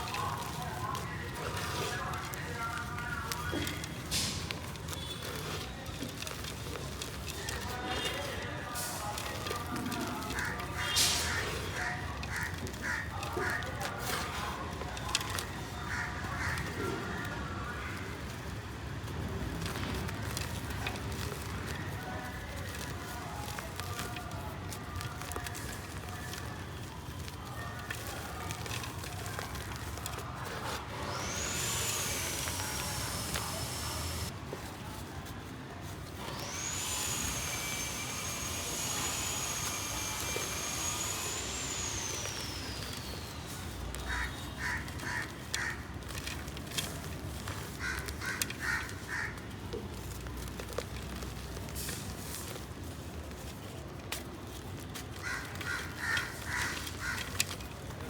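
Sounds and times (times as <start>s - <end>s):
dry mud crumbling and crackling: 0.0s - 58.0s
crows cawing: 10.0s - 13.9s, 15.7s - 17.3s, 44.0s - 46.4s, 47.8s - 49.5s, 55.2s - 57.6s
high engine whine: 30.1s - 34.4s, 36.2s - 44.6s.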